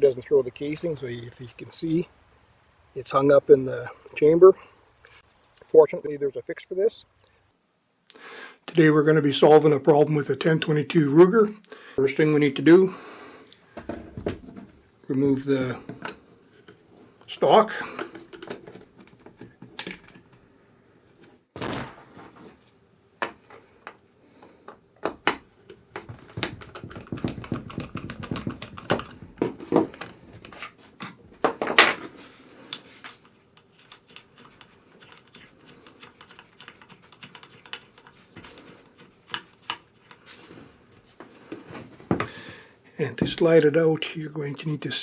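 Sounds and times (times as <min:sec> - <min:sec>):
rifle being handled clicks and knocks: 0:18.0 - 0:20.4, 0:24.7 - 0:32.1, 0:39.2 - 0:40.2.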